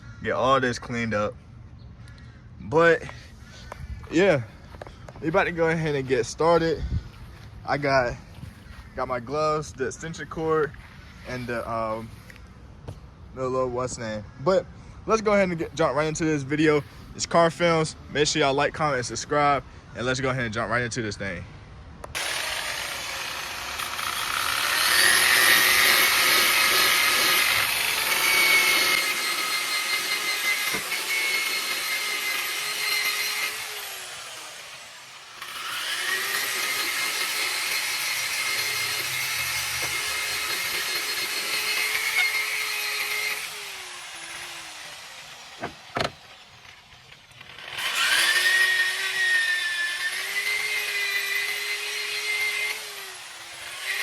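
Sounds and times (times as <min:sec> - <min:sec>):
power sander motor whine: 0:22.0 - 0:54.0.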